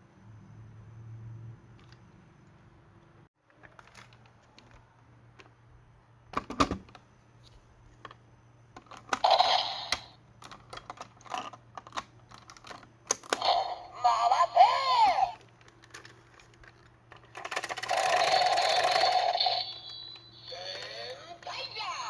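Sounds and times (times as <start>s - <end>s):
toy sound burst: 9.2s - 10.2s, 13.4s - 15.4s, 17.5s - 22.0s.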